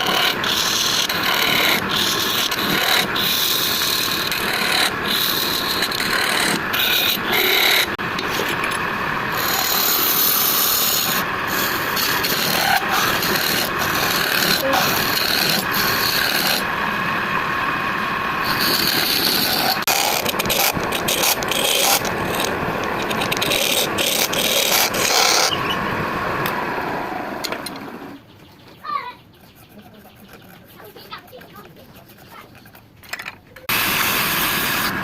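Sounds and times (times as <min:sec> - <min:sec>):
tool rasping into wood: 0:00.0 - 0:08.6, 0:09.4 - 0:16.7, 0:18.4 - 0:25.6.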